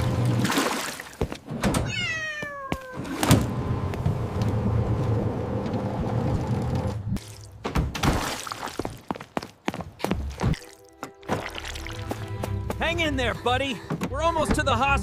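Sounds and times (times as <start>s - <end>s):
cat meowing: 1.8s - 3.2s.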